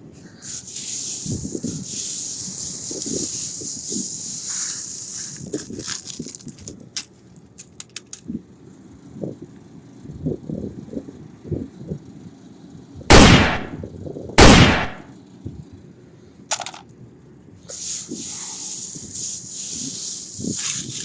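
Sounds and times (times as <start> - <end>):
hissing rattle: 0.2 - 5.8, 17.7 - 21.0
gunshot bangs: 13.1 - 13.8, 14.4 - 15.0
sharp crack: 13.1 - 13.8, 14.4 - 15.1.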